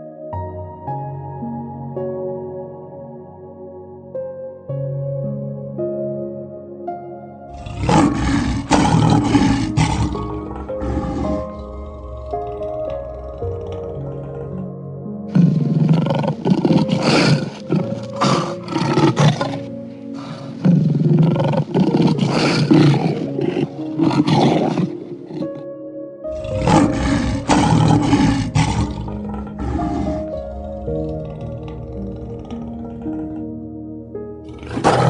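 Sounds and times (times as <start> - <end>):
soft background music: 0.0 - 35.0
large animal roaring: 7.5 - 14.7, 15.3 - 25.6, 26.3 - 33.6, 34.5 - 35.0.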